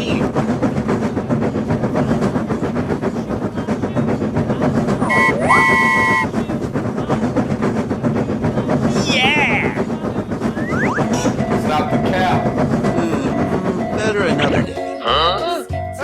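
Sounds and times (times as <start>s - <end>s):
train wheels clickety-clack: 0.0s - 15.0s
train horn blast: 5.0s - 6.3s.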